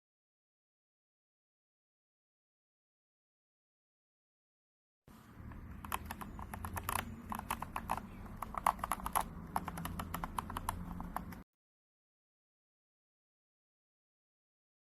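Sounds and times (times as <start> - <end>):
mechanical keyboard typing: 5.4 - 11.4.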